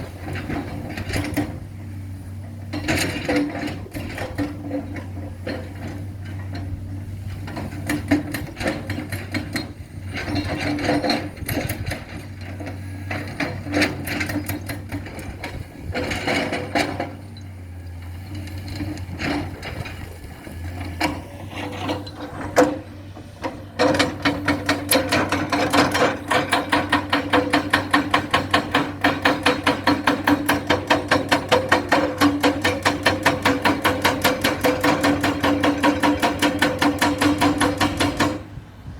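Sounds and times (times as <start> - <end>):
excavator engine drone: 0.0 - 38.9
metallic clanks and knocks: 2.4 - 38.5
loud regular knocking: 23.8 - 38.4.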